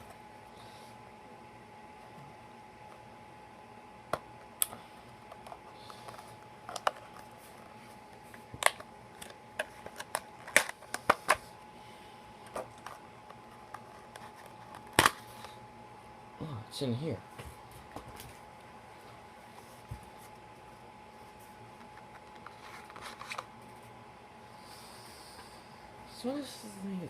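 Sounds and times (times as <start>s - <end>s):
faint high hum: 0.0s - 27.0s
packaging clicks and crackles: 4.6s - 7.3s, 8.2s - 11.4s.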